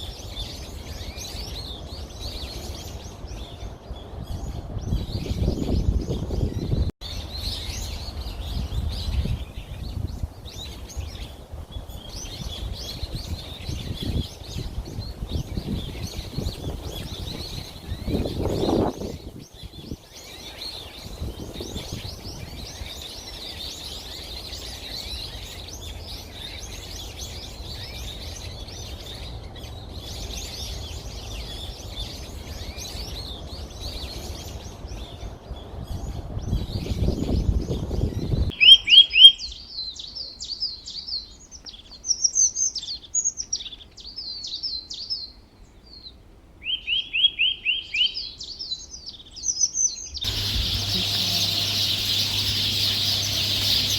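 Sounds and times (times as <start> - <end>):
bird trills: 38.6 - 39.4, 50.3 - 53.9
flock of birds chirping: 50.2 - 53.9.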